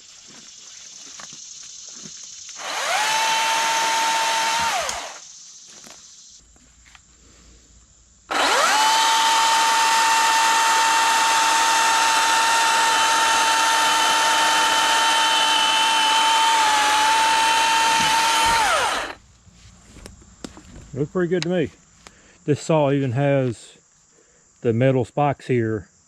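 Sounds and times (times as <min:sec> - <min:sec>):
electric chainsaw whine: 0:02.5 - 0:06.0, 0:08.3 - 0:19.2.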